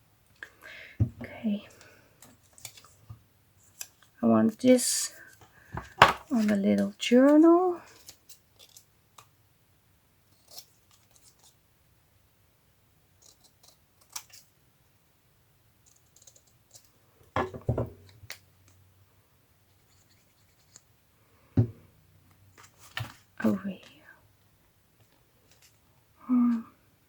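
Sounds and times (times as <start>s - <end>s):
knock on work table: 17.4s - 18.0s.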